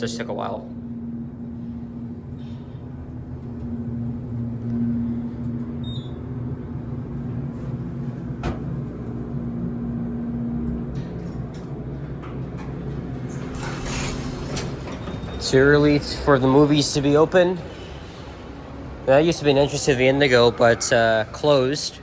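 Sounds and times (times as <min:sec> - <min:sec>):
elevator motor hum: 0:00.0 - 0:20.6
low rumble: 0:13.2 - 0:17.4.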